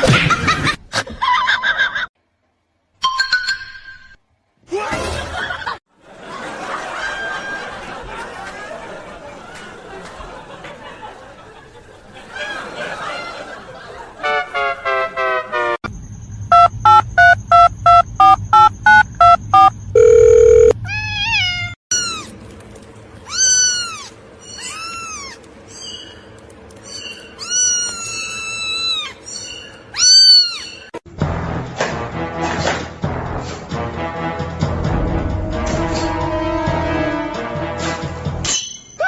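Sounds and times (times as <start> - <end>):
electronic beeps: 16.5 - 20.7
cat meowing: 20.8 - 22.4, 23.3 - 25.4, 27.4 - 29.2, 29.9 - 30.8.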